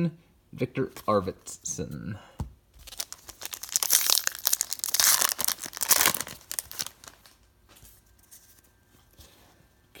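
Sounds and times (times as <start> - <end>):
plastic wrapper tearing and crinkling: 2.8 - 7.4.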